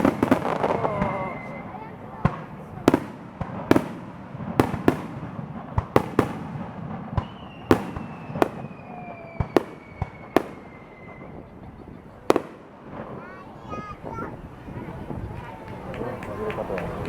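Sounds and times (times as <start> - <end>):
fireworks bursting: 0.0 - 16.8
faint whistle falling in pitch: 7.2 - 11.4.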